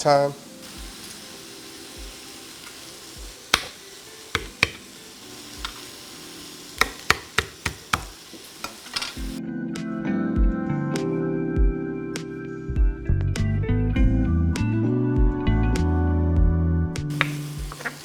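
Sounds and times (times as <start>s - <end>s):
chicken sizzling in a wok: 0.0s - 9.4s, 17.1s - 18.0s
guitar music: 0.0s - 9.4s, 17.1s - 18.0s
knife chopping on cutting board: 3.5s - 3.8s, 4.4s - 4.9s, 6.8s - 8.8s, 17.2s - 18.0s.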